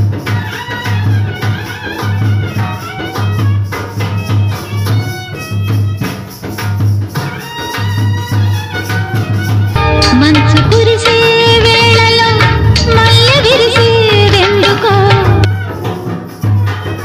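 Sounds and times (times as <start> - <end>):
instrumental music with steady beat: 0.0 - 17.0
shaken percussion: 0.0 - 17.0
pulsing bass: 9.8 - 13.5.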